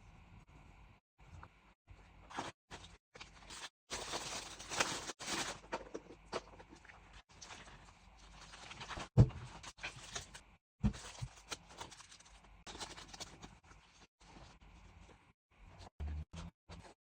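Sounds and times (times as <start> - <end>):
packaging rustling: 3.2 - 6.5.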